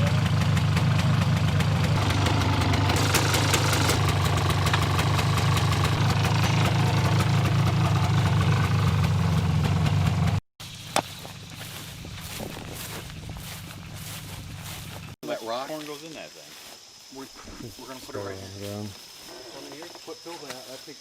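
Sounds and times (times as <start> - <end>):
vehicle engine running: 0.0 - 15.2.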